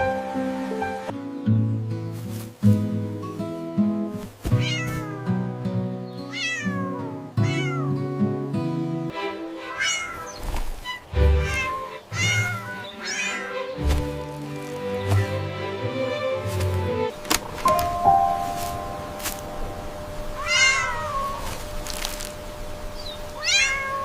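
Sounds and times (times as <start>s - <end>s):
background music: 0.0s - 4.2s, 5.1s - 10.1s, 11.0s - 20.4s
cat meowing: 4.6s - 5.4s, 6.2s - 8.0s, 9.7s - 10.4s, 11.4s - 13.7s, 20.4s - 21.5s, 23.4s - 24.0s.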